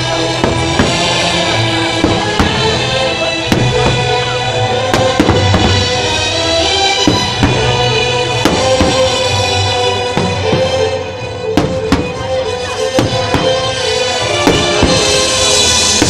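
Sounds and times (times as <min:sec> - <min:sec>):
loud music with heavy drum beat: 0:00.1 - 0:04.2
sharp bangs: 0:07.0 - 0:09.4, 0:10.0 - 0:16.0.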